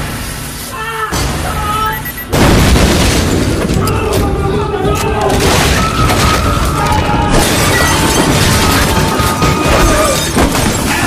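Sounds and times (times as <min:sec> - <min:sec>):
crashing noises: 0:02.3 - 0:11.0.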